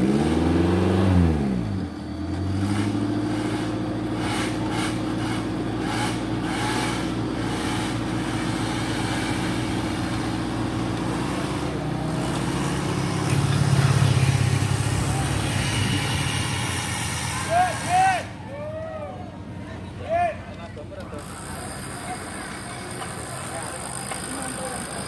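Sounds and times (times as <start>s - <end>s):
engine revving: 0.0s - 17.9s.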